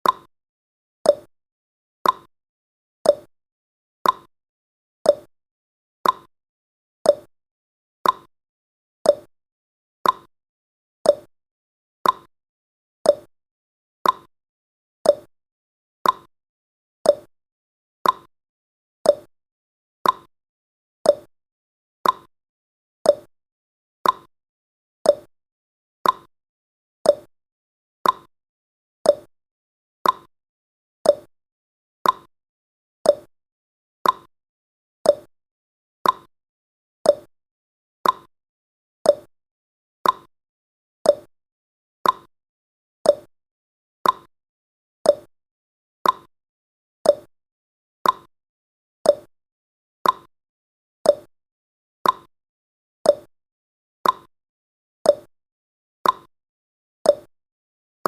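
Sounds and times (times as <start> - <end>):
timer ticking: 0.0 - 0.3, 1.1 - 1.3, 2.0 - 2.3, 3.1 - 3.3, 4.0 - 4.3, 5.1 - 5.3, 6.0 - 6.3, 7.1 - 7.3, 8.0 - 8.3, 9.1 - 9.3, 10.0 - 10.3, 11.1 - 11.3, 12.0 - 12.3, 13.1 - 13.3, 14.0 - 14.3, 15.1 - 15.3, 16.0 - 16.3, 17.1 - 17.3, 18.0 - 18.3, 19.1 - 19.3, 20.0 - 20.3, 21.1 - 21.3, 22.0 - 22.3, 23.1 - 23.3, 24.0 - 24.3, 25.1 - 25.3, 26.0 - 26.3, 27.1 - 27.3, 28.0 - 28.3, 29.1 - 29.3, 30.0 - 30.3, 31.0 - 31.3, 32.0 - 32.3, 33.1 - 33.3, 34.0 - 34.3, 35.1 - 35.3, 36.0 - 36.3, 37.1 - 37.3, 38.0 - 38.3, 39.1 - 39.3, 40.0 - 40.3, 41.1 - 41.3, 42.0 - 42.3, 43.1 - 43.3, 44.0 - 44.3, 45.1 - 45.3, 46.0 - 46.3, 47.0 - 47.3, 48.0 - 48.3, 49.1 - 49.3, 50.0 - 50.3, 51.1 - 51.3, 52.0 - 52.3, 53.1 - 53.3, 54.0 - 54.3, 55.1 - 55.3, 56.0 - 56.3, 57.1 - 57.3.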